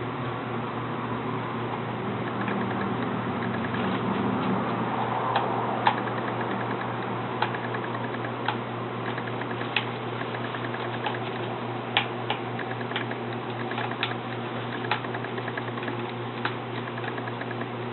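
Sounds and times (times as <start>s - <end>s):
steady low hum: 0.0s - 17.9s
sharp clicks and taps: 2.2s - 3.9s, 5.3s - 17.7s.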